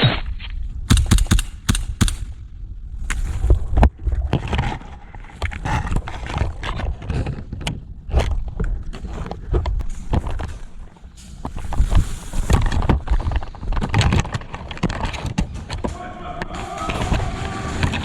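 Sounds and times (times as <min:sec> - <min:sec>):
sharp snaps and knocks: 0:00.9 - 0:02.4.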